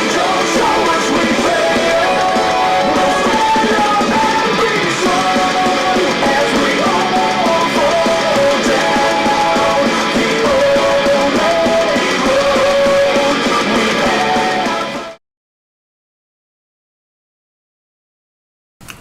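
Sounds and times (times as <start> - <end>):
rock music from a speaker: 0.0 - 15.2.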